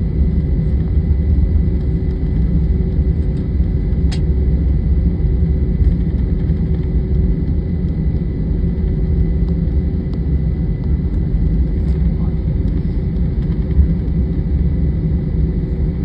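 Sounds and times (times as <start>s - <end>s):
jet engine low rumble: 0.0s - 16.0s.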